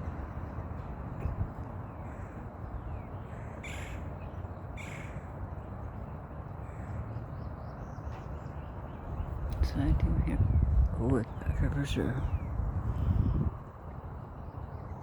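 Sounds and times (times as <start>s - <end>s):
bird harsh raspy calls: 3.2s - 5.3s
steady low rumble: 9.0s - 15.0s.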